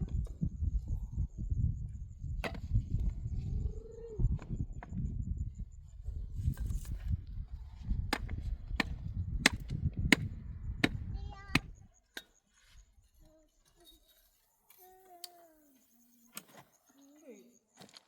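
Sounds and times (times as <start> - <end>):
axe chopping wood: 8.1 - 11.0.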